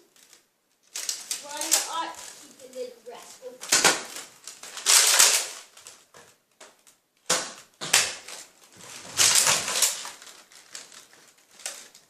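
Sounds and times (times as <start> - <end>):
toy blasters clacking and rattling: 1.0 - 5.8.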